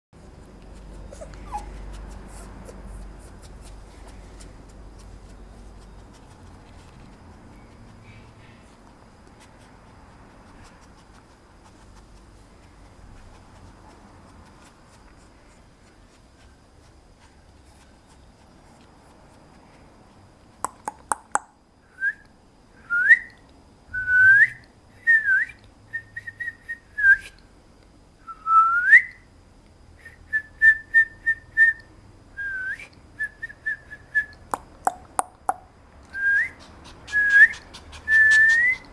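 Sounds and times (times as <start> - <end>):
puppy whining: 0.6 - 8.6, 36.2 - 38.9.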